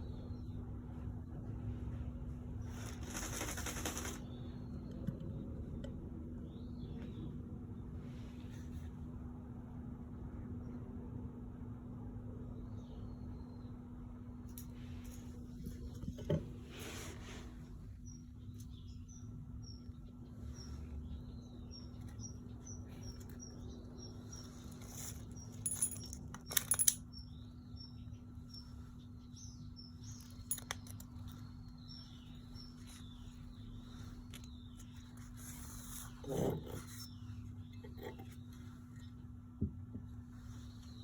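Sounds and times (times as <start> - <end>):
steady low hum: 0.0 - 41.0
small bird chirping: 17.8 - 26.3, 27.0 - 39.3.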